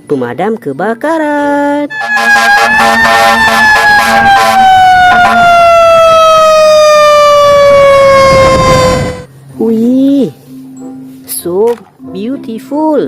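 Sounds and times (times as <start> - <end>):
fire engine siren wailing: 1.9 - 9.3.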